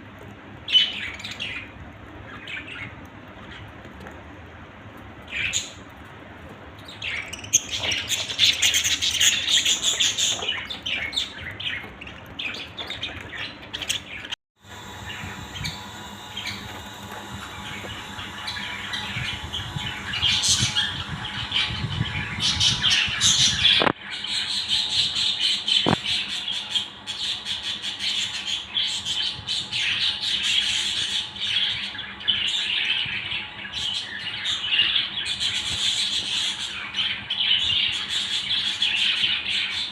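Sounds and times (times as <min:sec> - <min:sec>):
budgerigars chattering and squawking: 0:06.8 - 0:39.9.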